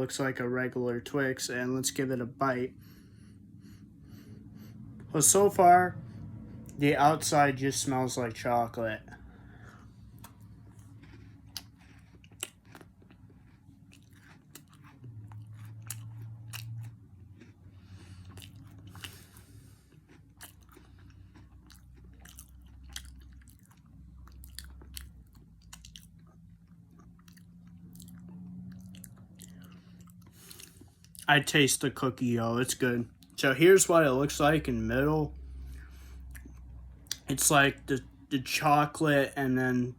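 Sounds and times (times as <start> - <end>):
chewing crunchy candy bar: 9.1 - 33.4.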